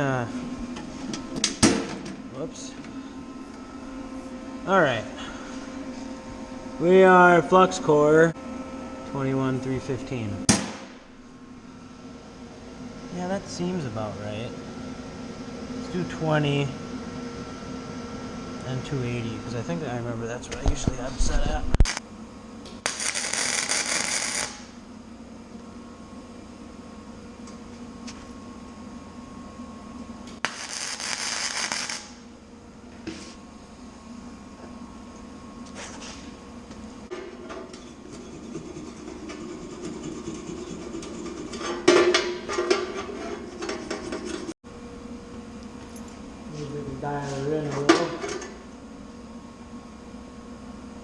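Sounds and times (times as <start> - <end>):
welder hum: 0.0 - 28.6, 29.9 - 43.0
welder crackling hiss: 21.7 - 22.0, 22.8 - 24.7, 30.4 - 32.2.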